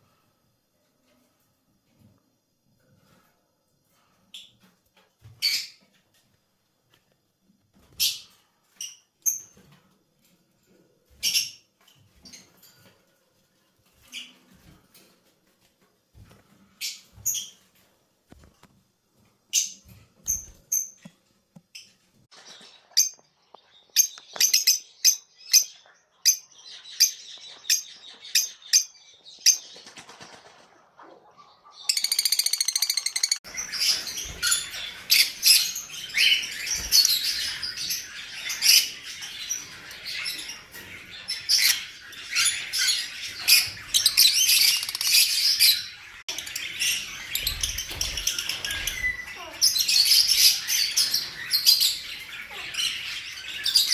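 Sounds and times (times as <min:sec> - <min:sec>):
lovebirds chirping and squawking: 0:04.3 - 0:06.0, 0:13.8 - 0:14.9, 0:21.7 - 0:53.9.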